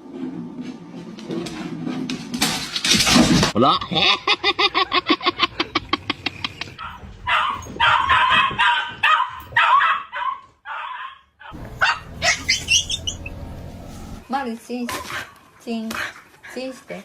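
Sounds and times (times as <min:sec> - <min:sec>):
dog barking and yipping: 0:06.8 - 0:13.5.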